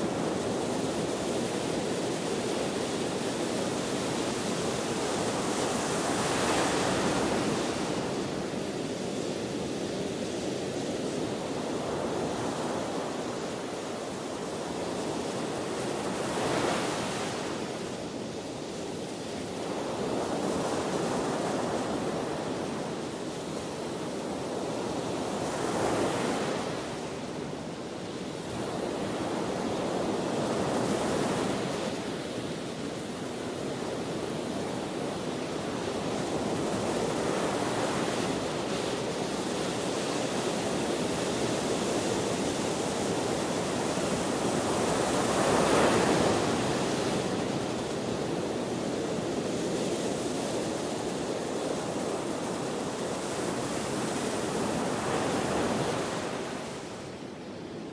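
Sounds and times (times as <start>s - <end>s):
wind: 0.0s - 57.9s.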